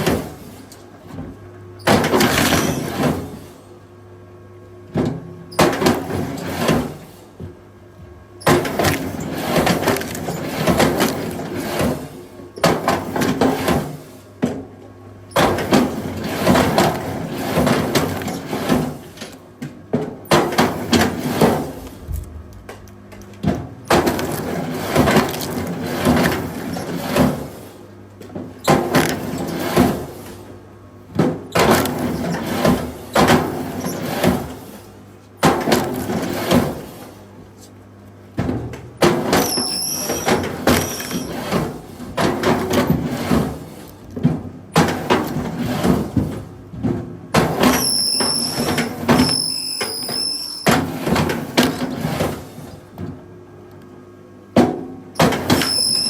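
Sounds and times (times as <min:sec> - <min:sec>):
high squeals: 0:47.8 - 0:48.6, 0:49.2 - 0:50.7, 0:55.6 - 0:56.0.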